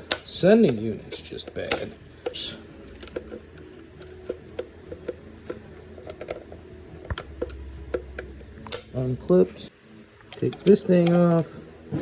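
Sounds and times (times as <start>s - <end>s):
plastic clips clicking: 0.0s - 9.1s, 10.2s - 11.4s
low hum: 2.0s - 9.7s.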